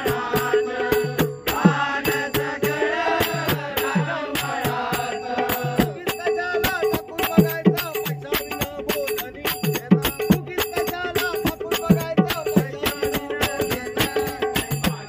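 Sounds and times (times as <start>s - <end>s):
person singing devotional song: 0.0s - 15.0s
hand drum with bending bass: 5.6s - 15.0s.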